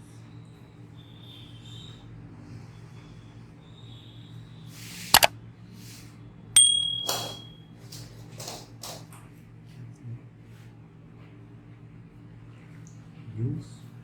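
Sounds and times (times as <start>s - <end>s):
bright ding: 6.6s - 7.6s.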